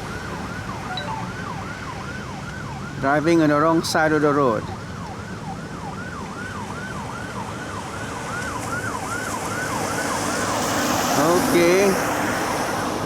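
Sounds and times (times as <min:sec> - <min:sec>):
siren yelping: 0:00.7 - 0:01.9.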